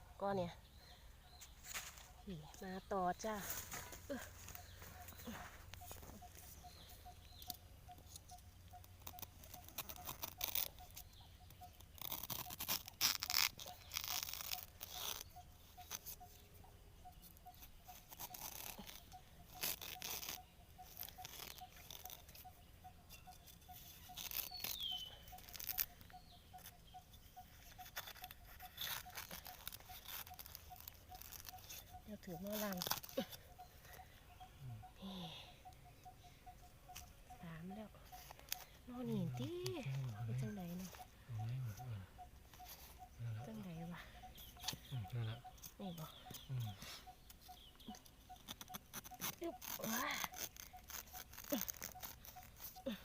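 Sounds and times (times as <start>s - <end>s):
dry leaves crunching underfoot: 1.4s - 2.2s, 3.2s - 7.4s
twigs snapping: 27.6s - 34.0s.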